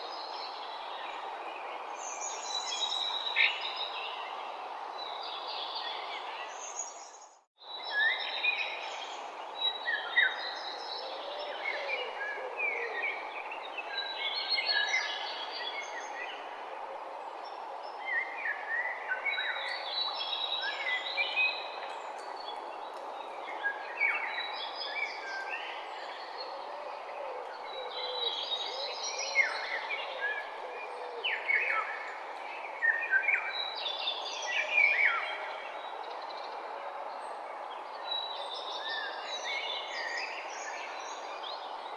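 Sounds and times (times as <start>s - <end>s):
environmental background noise: 0.0s - 41.9s
songbirds chirping and singing: 17.4s - 41.9s.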